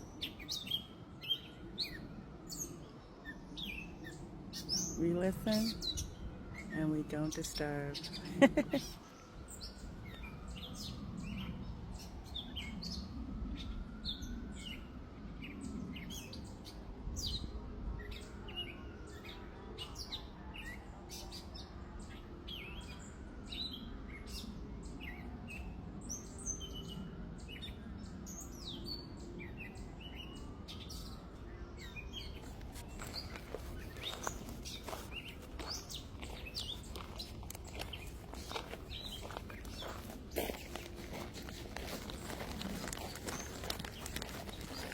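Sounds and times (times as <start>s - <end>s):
small birds chirping: 19.3s - 44.9s.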